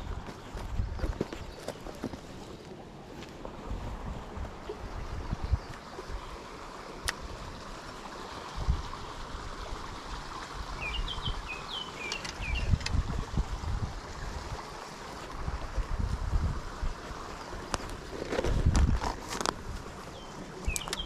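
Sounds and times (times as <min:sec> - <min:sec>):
wind on microphone: 0:00.0 - 0:01.6, 0:03.6 - 0:06.3, 0:08.5 - 0:10.0, 0:12.3 - 0:14.7, 0:15.3 - 0:20.0
water rushing over spillway: 0:03.5 - 0:21.0
bird chirping: 0:10.8 - 0:12.8, 0:20.1 - 0:21.0.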